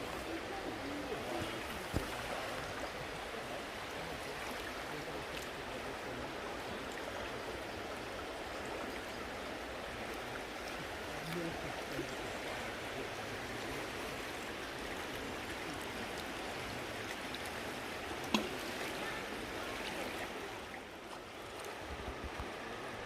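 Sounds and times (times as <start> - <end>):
river water rushing: 0.0 - 23.0.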